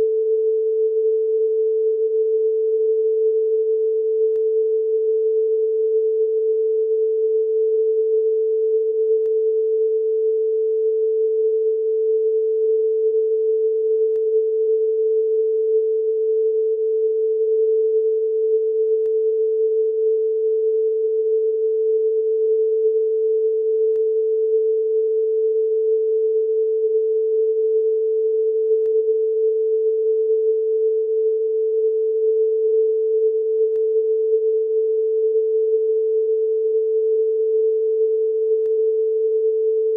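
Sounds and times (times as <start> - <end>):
faint tick: 18.9 - 19.2, 23.8 - 24.1, 28.7 - 29.0, 33.6 - 33.9, 38.6 - 38.8.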